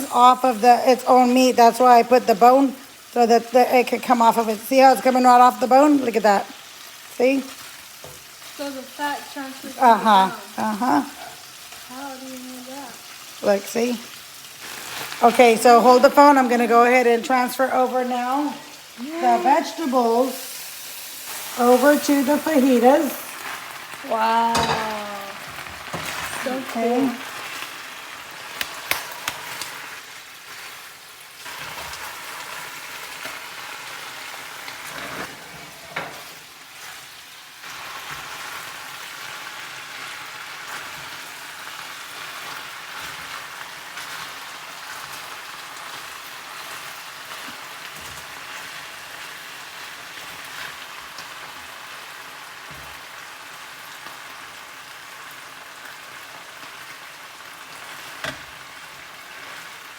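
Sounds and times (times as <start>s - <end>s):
meat and vegetables sizzling in a pan: 0.0s - 59.9s
utensil knocking on pan: 24.5s - 25.0s.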